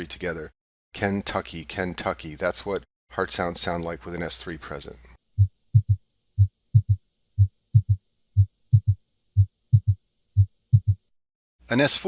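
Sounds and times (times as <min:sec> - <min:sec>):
heartbeat thuds: 0:05.4 - 0:11.1.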